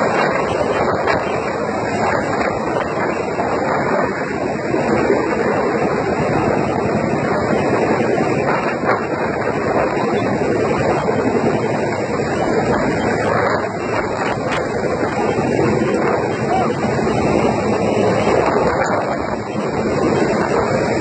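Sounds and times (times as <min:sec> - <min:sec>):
helicopter running: 0:00.0 - 0:21.0
wind buffeting microphone: 0:00.0 - 0:21.0.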